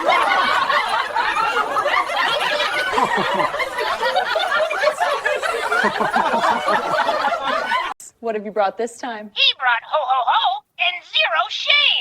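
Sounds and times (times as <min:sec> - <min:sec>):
people laughing together: 0:00.0 - 0:08.0.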